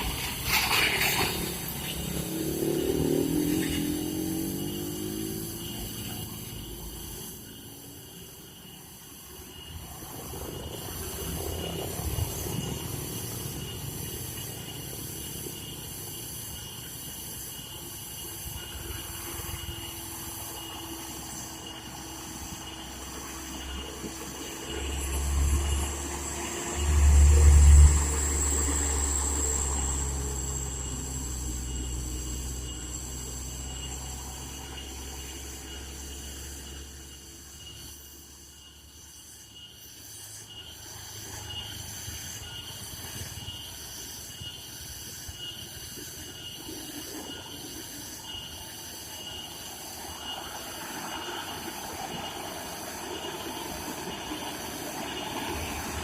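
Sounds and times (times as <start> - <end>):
diesel truck engine labouring: 9.7 - 37.9.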